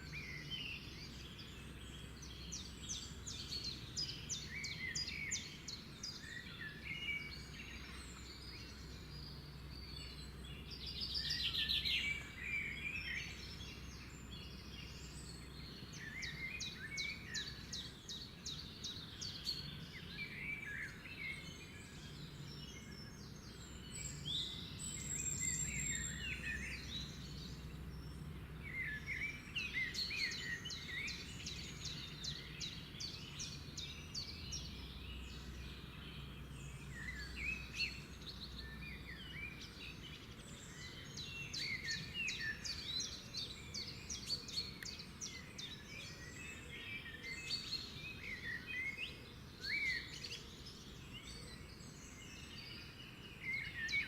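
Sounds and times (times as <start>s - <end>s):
birds singing: 0.0s - 54.0s.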